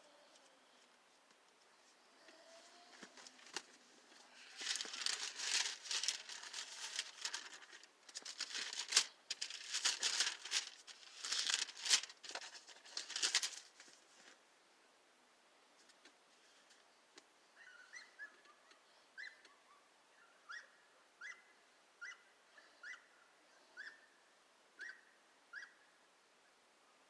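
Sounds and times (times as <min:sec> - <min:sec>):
paper rustling: 0:01.1 - 0:14.4.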